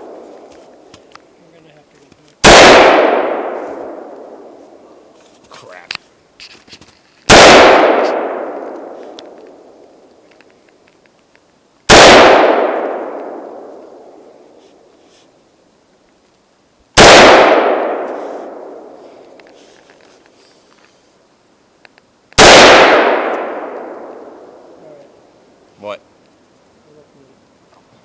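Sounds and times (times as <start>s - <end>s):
rifle shots echoing: 2.4s - 4.6s, 7.3s - 9.8s, 11.9s - 14.2s, 17.0s - 19.0s, 22.4s - 24.8s.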